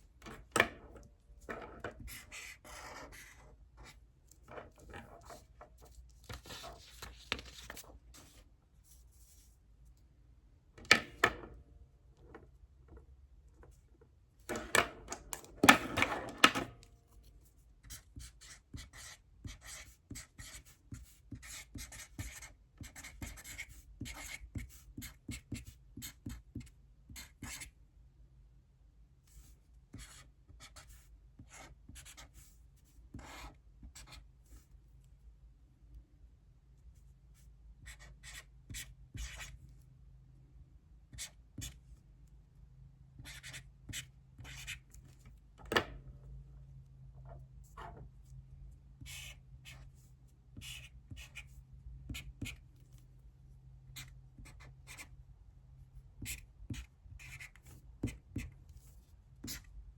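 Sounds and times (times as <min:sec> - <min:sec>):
pen scratching on paper: 0:02.0 - 0:06.7, 0:17.9 - 0:26.5, 0:30.0 - 0:32.5, 0:33.1 - 0:34.2, 0:37.9 - 0:39.5, 0:43.2 - 0:44.9, 0:49.0 - 0:52.6, 0:54.0 - 0:55.1, 0:56.2 - 0:59.7.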